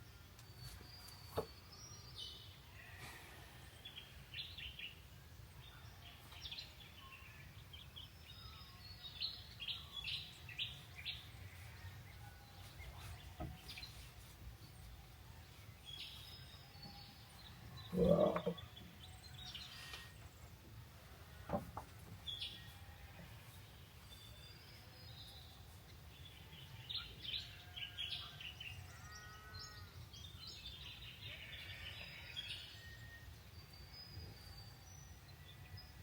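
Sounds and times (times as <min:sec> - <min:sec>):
birds chirping: 0:15.9 - 0:20.6.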